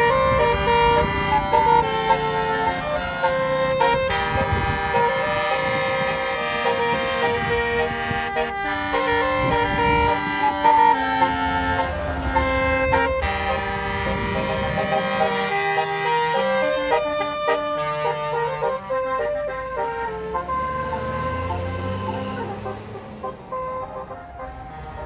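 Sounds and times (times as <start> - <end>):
multi-trumpet bus horn playing tune: 0.0 - 25.0
low engine rumble: 0.1 - 16.2.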